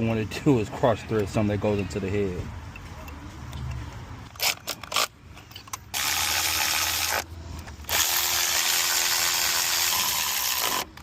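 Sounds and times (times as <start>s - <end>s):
power tool running: 5.9s - 11.0s.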